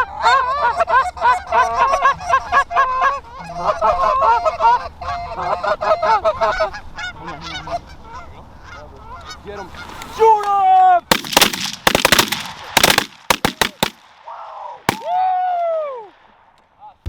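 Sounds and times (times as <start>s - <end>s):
geese honking: 0.0s - 10.2s.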